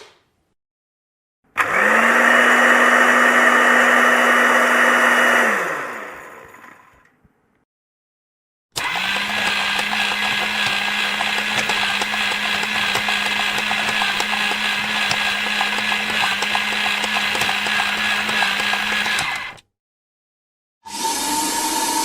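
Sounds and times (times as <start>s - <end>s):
electric blender grinding: 1.6s - 7.0s, 8.8s - 19.6s.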